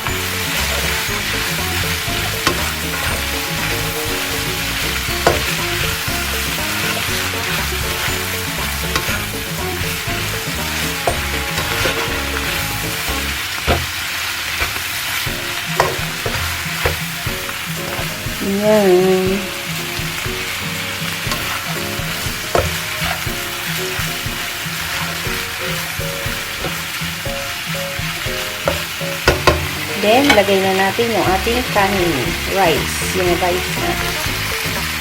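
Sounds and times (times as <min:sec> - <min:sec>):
vegetables sizzling in oil: 0:00.0 - 0:35.0.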